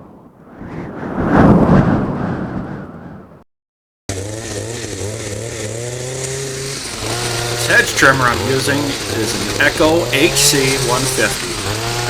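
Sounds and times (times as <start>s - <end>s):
loud rushing whoosh: 0.0s - 3.4s
hedge trimmer engine running: 4.1s - 12.0s.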